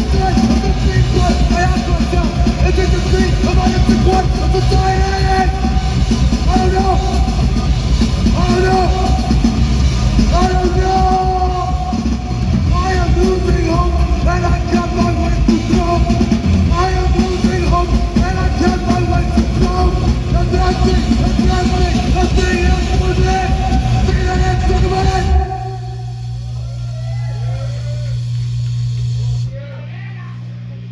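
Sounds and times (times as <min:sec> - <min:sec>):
live punk rock band: 0:00.0 - 0:26.1
person yelling vocals: 0:10.3 - 0:12.1.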